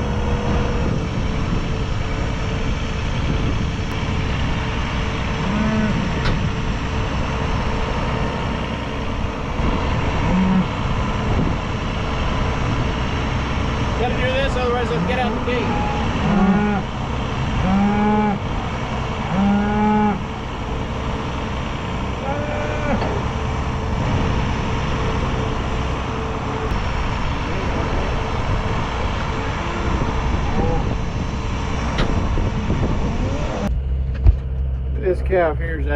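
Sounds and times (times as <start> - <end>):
tractor engine running: 0.0 - 35.9
low-pitched calls: 15.0 - 20.8.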